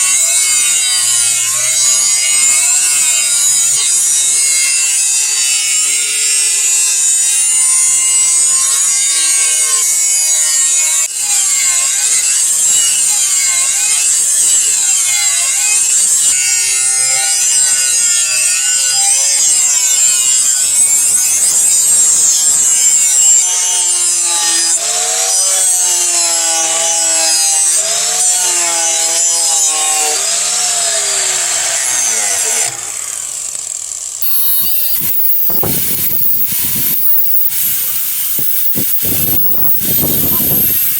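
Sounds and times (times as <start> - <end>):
knife blade grinding hiss: 34.2 - 40.9.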